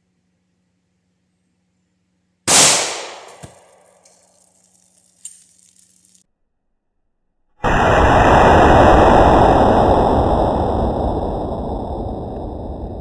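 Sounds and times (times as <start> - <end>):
gunshot echo: 2.5 - 4.0
wind buffeting microphone: 7.7 - 13.0.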